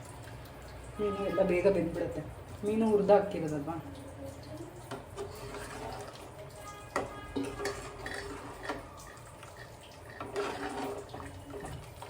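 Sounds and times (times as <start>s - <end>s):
metal utensil clinking on pot: 7.0s - 12.0s.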